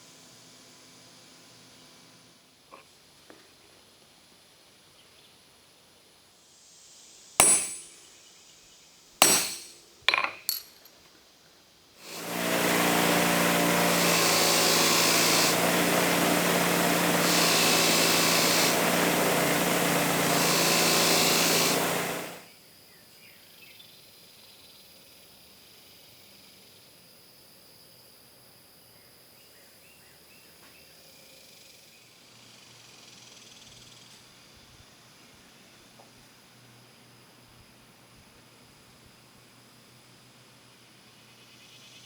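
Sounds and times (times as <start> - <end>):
power tool high hiss: 6.4 - 8.1, 9.2 - 9.8, 12.0 - 22.5
sharp metal knocks: 7.4 - 8.0, 9.2 - 10.7.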